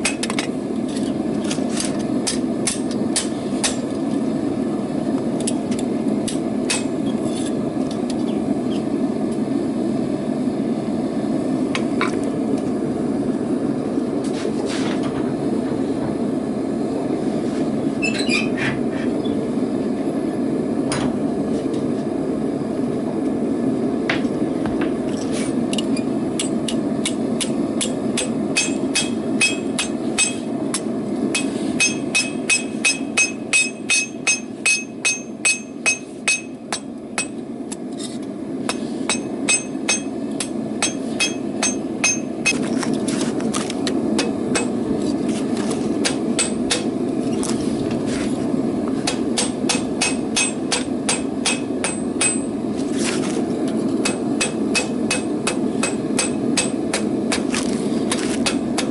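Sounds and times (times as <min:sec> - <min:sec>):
hammer striking metal on anvil: 0:06.3 - 0:06.9, 0:26.4 - 0:37.4, 0:38.7 - 0:42.6, 0:44.2 - 0:44.8, 0:46.0 - 0:46.9, 0:49.0 - 0:52.6, 0:54.0 - 0:57.4.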